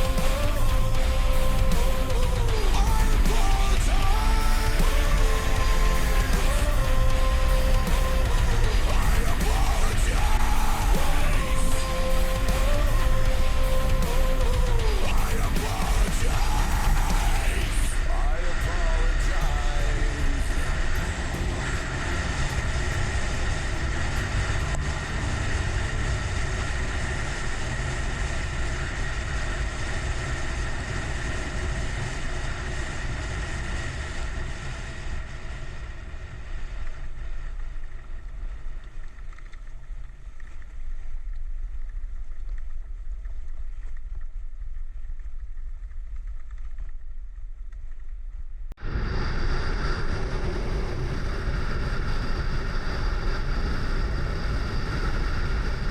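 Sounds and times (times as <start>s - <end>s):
motorcycle engine running: 0.0s - 33.2s
wind rushing over microphone: 48.8s - 55.9s.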